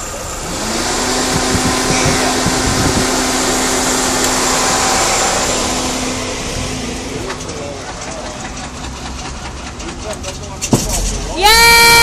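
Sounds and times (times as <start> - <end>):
loud whirring hiss: 0.0 - 7.2
motor whine and hum: 0.0 - 7.7
low thumps: 1.2 - 3.6.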